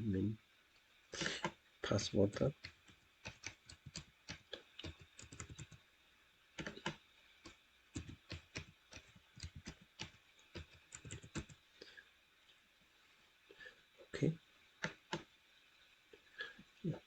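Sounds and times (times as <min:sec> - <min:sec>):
typing on laptop keyboard: 0:02.6 - 0:05.8, 0:06.6 - 0:11.6.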